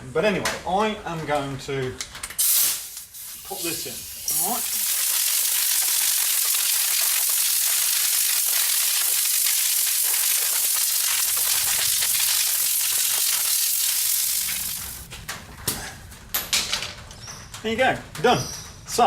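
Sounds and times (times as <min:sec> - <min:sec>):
compressed air blow gun hissing: 0:02.4 - 0:06.5.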